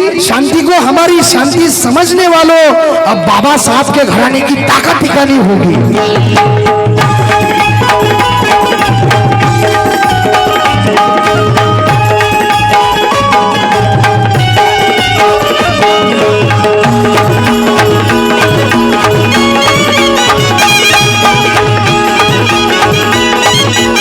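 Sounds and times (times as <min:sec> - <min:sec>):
hand drums: 0:04.7 - 0:24.0
melody of held notes: 0:05.9 - 0:24.0.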